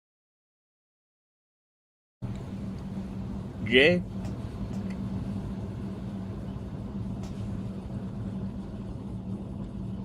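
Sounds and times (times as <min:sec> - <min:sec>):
low hum with rumble and hiss: 0:02.2 - 0:10.0.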